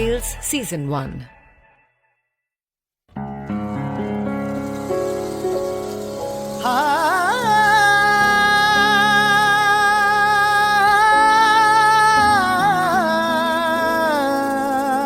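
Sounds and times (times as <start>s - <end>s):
woman singing wordless line: 0.0s - 1.3s
low musical accompaniment: 3.2s - 15.0s.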